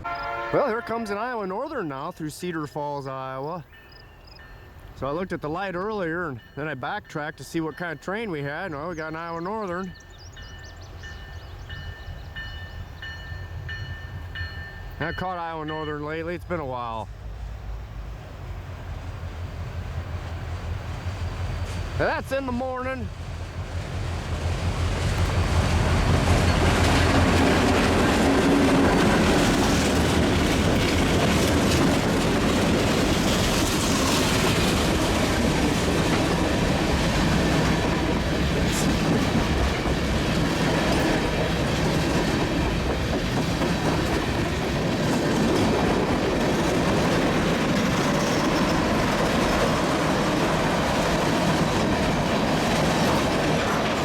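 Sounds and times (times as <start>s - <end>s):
freight train passing: 0.0s - 54.0s
steel wheels rolling on rails: 18.2s - 54.0s.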